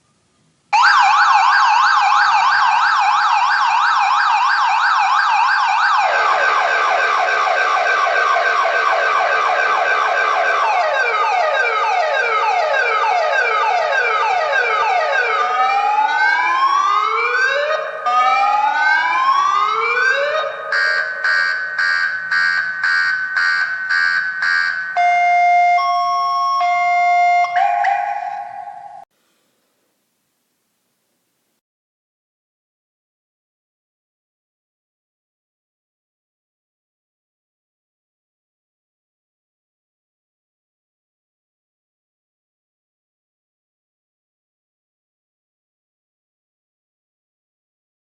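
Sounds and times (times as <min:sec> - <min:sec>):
car alarm siren cycling tones: 0:00.7 - 0:29.1.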